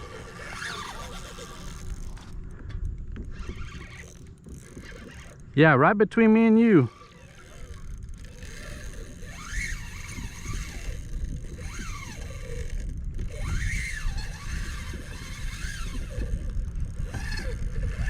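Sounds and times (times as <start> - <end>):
faint squeaks: 0.0 - 5.4
wind rumbling on microphone: 0.0 - 5.7, 6.7 - 18.0.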